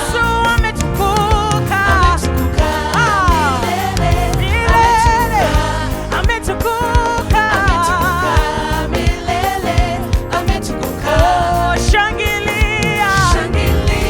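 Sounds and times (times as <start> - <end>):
band with steady drum beat: 0.0 - 14.0
voices singing gospel music: 0.0 - 14.0.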